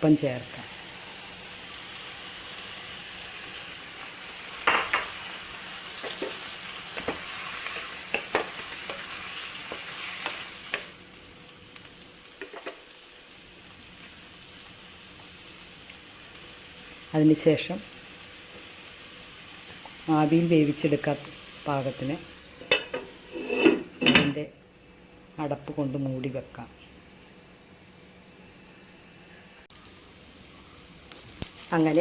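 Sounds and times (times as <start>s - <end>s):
food sizzling in a pan: 0.0s - 24.0s, 28.2s - 32.0s
spoon scraping a pan: 22.6s - 24.0s.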